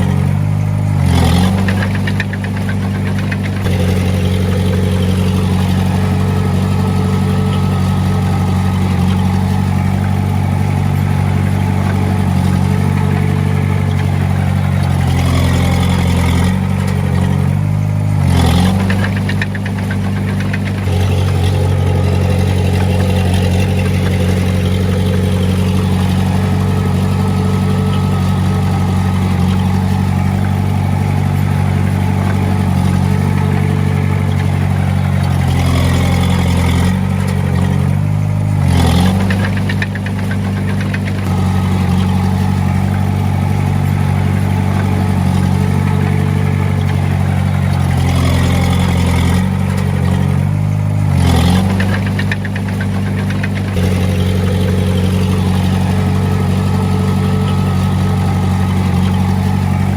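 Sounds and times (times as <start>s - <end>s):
diesel engine running: 0.0s - 59.9s.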